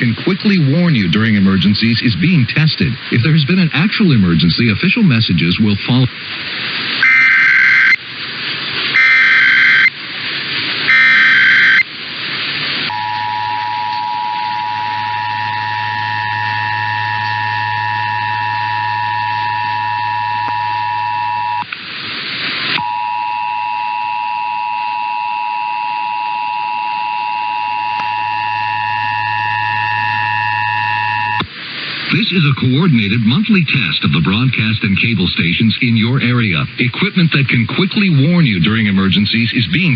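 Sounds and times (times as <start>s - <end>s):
radio static hiss: 0.0s - 39.9s
warbling data bursts: 7.0s - 8.0s, 8.9s - 9.9s, 10.9s - 11.9s, 12.9s - 21.7s
two-tone attention signal: 10.9s - 11.8s, 12.9s - 21.6s.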